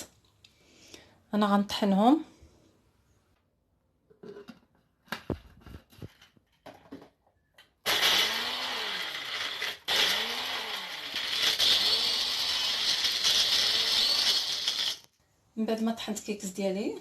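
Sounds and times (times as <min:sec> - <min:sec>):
electric grinder motor: 0:07.9 - 0:15.1.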